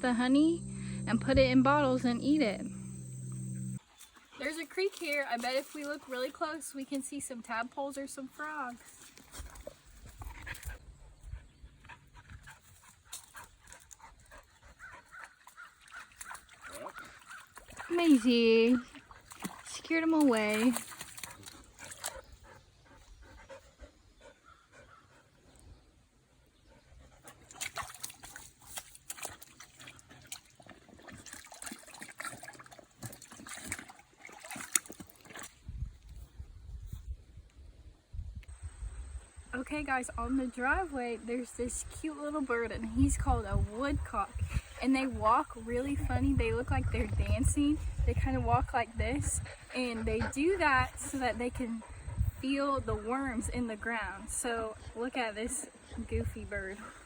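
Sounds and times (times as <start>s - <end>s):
creek water splashing: 0.0s - 10.8s, 12.4s - 22.7s, 27.1s - 35.8s
dog panting: 21.2s - 25.4s, 49.1s - 52.4s.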